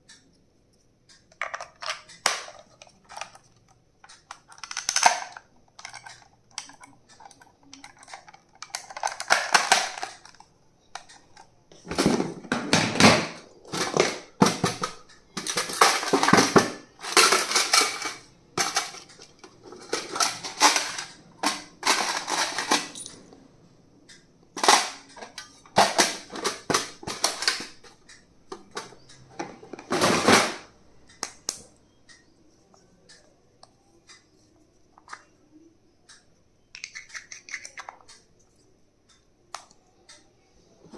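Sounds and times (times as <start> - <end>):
plastic items clicking and rustling: 1.3 - 23.2, 24.6 - 30.7.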